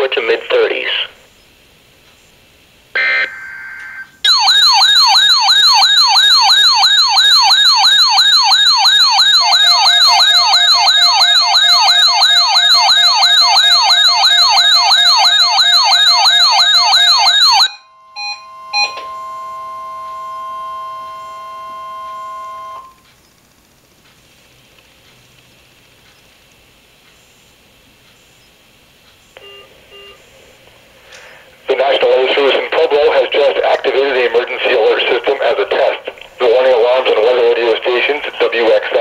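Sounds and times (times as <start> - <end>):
steady warning tone: 2.9 - 23.4, 26.8 - 39.0
digital code tones: 3.0 - 23.0, 29.4 - 30.2
warbling electronic alarm tones: 3.0 - 23.0, 29.4 - 30.4
beeps: 8.2 - 23.0, 29.4 - 30.3.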